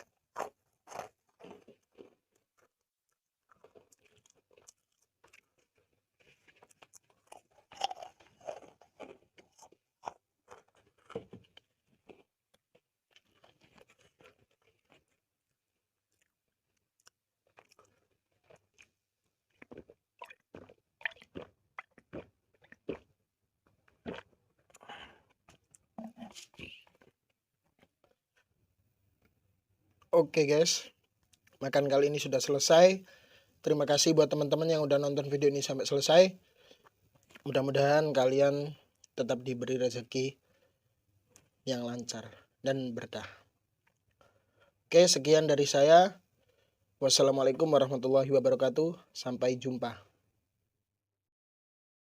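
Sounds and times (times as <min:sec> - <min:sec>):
person chewing food: 0:00.0 - 0:30.1, 0:30.9 - 0:31.6, 0:36.5 - 0:37.6, 0:40.4 - 0:41.6, 0:43.4 - 0:44.9.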